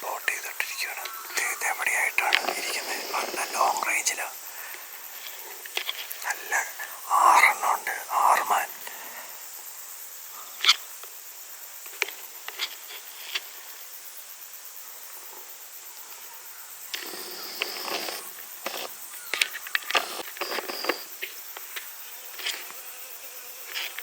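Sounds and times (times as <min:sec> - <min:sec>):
insects chirring: 0:00.0 - 0:24.0.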